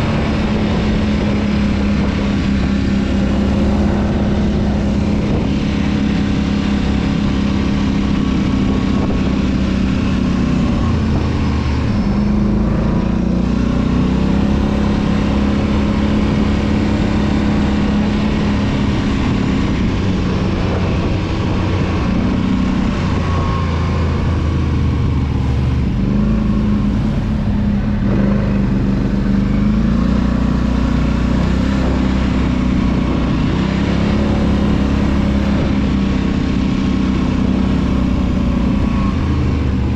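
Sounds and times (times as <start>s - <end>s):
atv engine revving: 0.0s - 39.9s
steady rush of noise: 0.0s - 39.9s.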